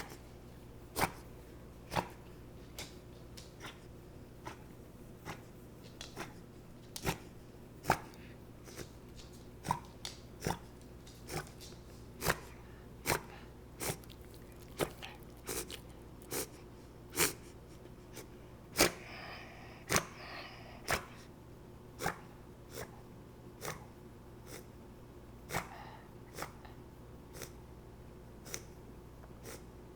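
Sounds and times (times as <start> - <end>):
dog clicking throat noises: 1.9 - 18.2, 19.9 - 20.2, 23.6 - 23.9, 25.5 - 27.6, 28.4 - 29.7
dog wheezy breath: 12.2 - 21.3, 29.4 - 29.7.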